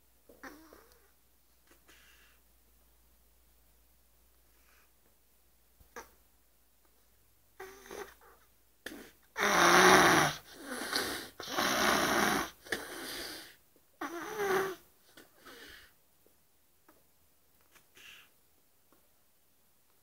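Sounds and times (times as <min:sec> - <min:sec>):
woman snoring: 0:09.4 - 0:14.8.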